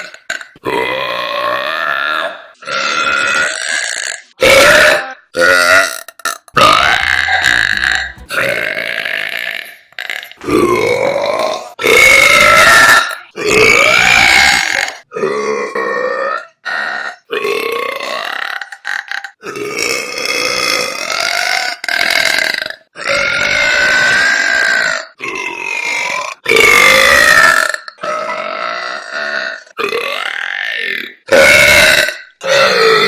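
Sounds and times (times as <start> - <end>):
woman belching: 4.8 - 8.5.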